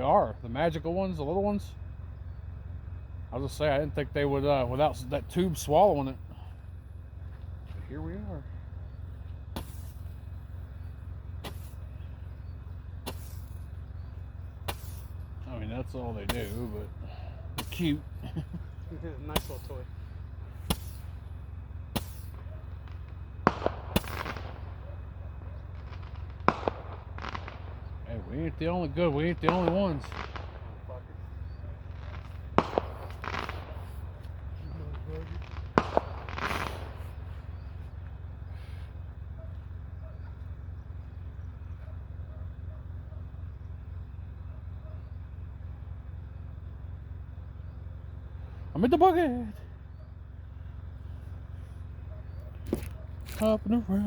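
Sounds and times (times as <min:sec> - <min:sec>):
steady low hum: 0:00.0 - 0:54.0
fireworks crackling: 0:03.2 - 0:39.2, 0:52.5 - 0:54.0
fireworks bangs: 0:03.3 - 0:39.3.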